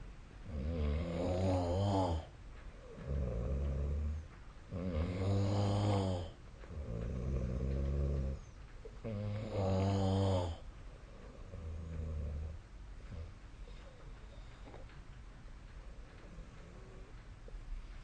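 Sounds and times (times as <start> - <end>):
person snoring: 0.5 - 2.3, 3.0 - 8.4, 9.0 - 10.6.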